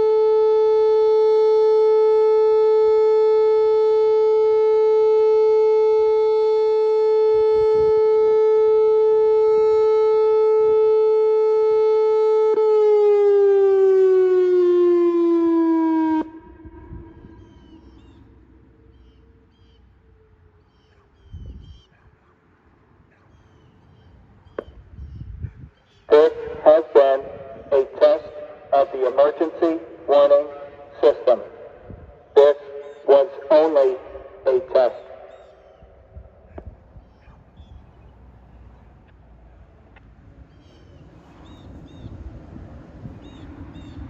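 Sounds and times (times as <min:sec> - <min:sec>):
siren echo: 0:00.0 - 0:20.4, 0:26.1 - 0:36.9
warning siren steady tone: 0:00.0 - 0:20.7, 0:26.1 - 0:37.0.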